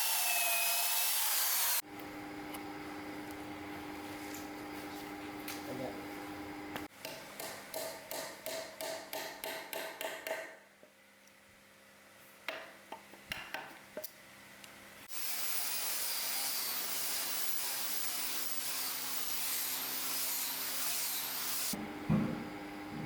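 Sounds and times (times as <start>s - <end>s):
thump: 22.1s - 22.5s.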